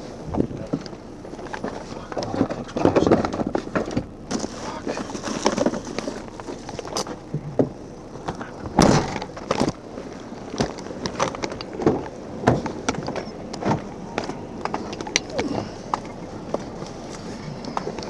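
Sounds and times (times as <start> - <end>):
knocks and clatters: 0.3 - 9.8
rustling: 0.7 - 11.8.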